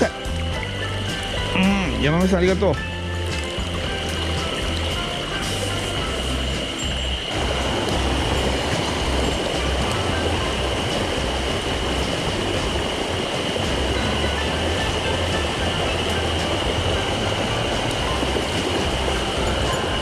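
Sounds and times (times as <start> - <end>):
high-pitched tone: 0.0 - 12.8
mountain stream rushing: 0.0 - 20.0
wind rumble on microphone: 0.0 - 20.0.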